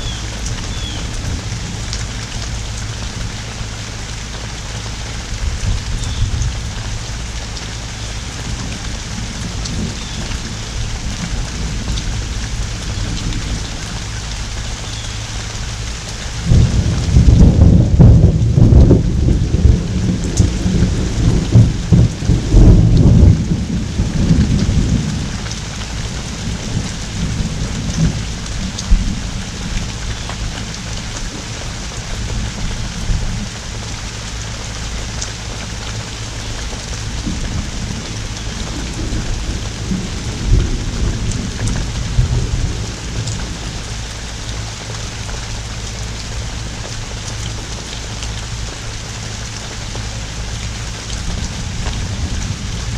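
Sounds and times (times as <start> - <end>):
pouring rain: 0.0 - 52.9
thunder rumbling: 16.4 - 31.4, 37.0 - 44.2.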